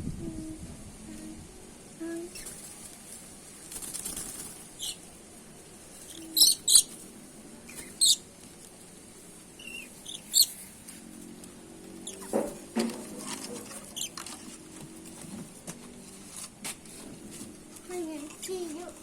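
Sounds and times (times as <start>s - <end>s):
parrot shrill calls: 6.1s - 6.9s, 7.8s - 8.2s, 9.6s - 10.5s.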